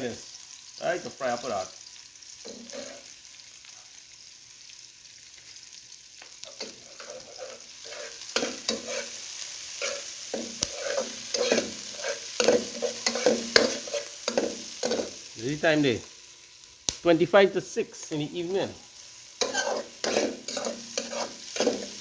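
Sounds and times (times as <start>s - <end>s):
vegetables sizzling in oil: 0.0s - 22.0s
spoon knocking and scraping pot: 2.5s - 3.0s, 6.5s - 9.2s, 9.8s - 15.2s, 19.4s - 22.0s.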